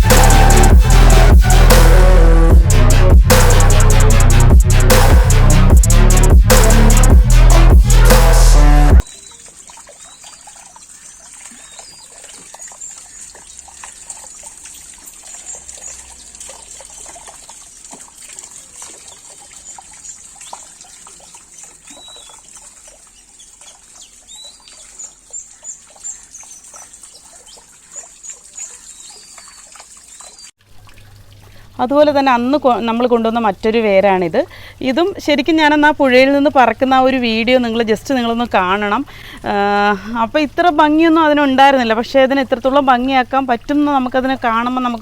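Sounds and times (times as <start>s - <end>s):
water trickling: 9.0s - 45.0s.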